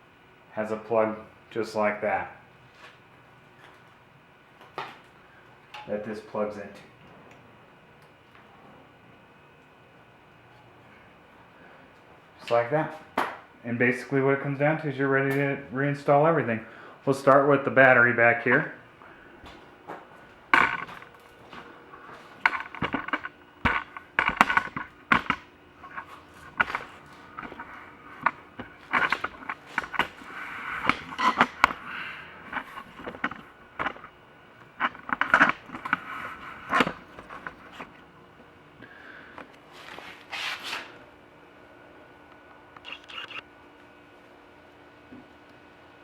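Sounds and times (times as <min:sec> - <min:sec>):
hand tools clicking and knocking: 0:19.4 - 0:38.0.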